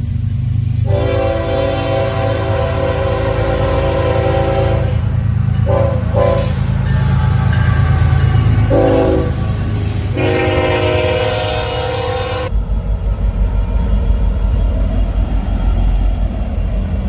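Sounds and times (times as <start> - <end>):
train rumbling past: 0.0 - 17.0
locomotive air horn: 0.8 - 12.5.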